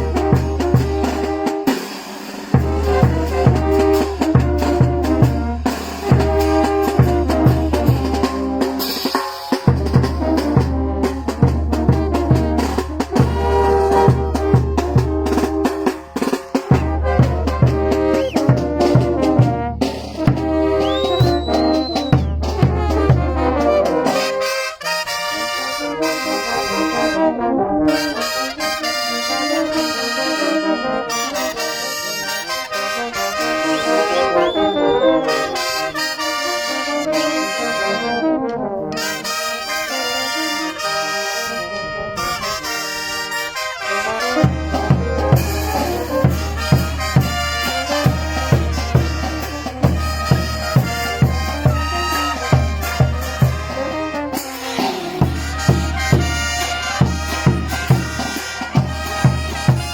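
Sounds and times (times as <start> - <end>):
brass band playing dance tune: 0.0 - 59.9
bass drum beats: 16.6 - 23.4.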